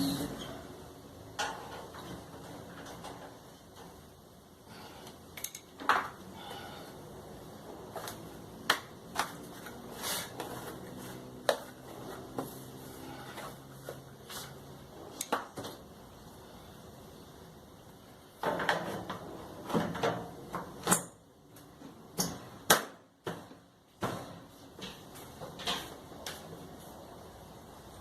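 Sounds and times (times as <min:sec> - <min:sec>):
tools and metal parts clicking: 0:05.4 - 0:05.7.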